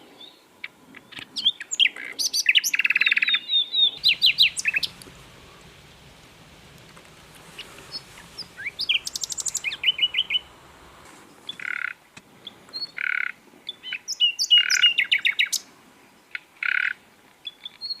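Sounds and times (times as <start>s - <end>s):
bird song of chirps and trills: 0.0s - 18.0s
harsh rasping bird notes: 3.9s - 12.0s.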